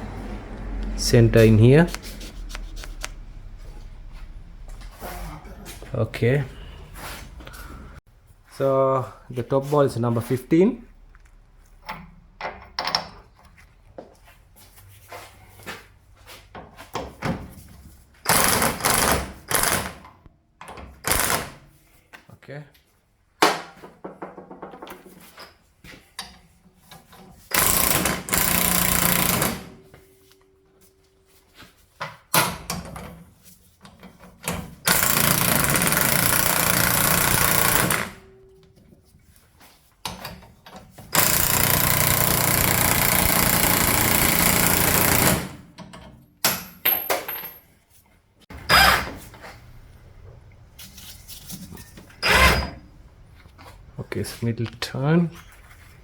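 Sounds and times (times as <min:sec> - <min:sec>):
tools and parts clanking: 0:11.8 - 0:13.6, 0:40.0 - 0:44.1, 0:44.7 - 0:49.6, 0:50.8 - 0:52.9
impact wrench running: 0:18.3 - 0:20.0, 0:21.0 - 0:21.6, 0:27.5 - 0:29.8, 0:34.9 - 0:38.2, 0:41.1 - 0:45.6.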